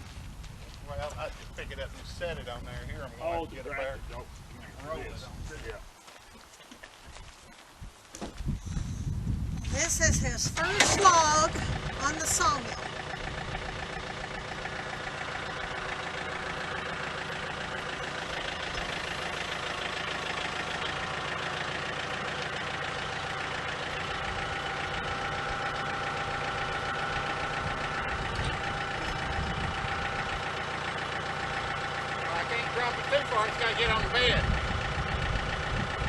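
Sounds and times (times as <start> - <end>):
machine engine running: 10.6 - 36.0.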